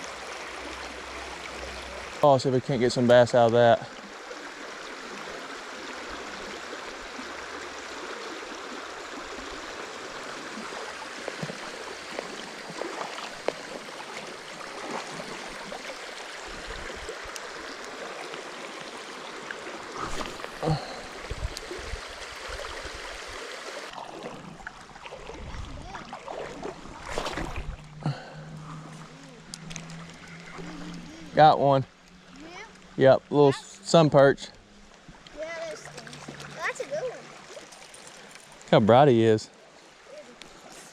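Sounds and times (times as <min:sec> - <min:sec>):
creek water flowing: 0:00.0 - 0:40.9.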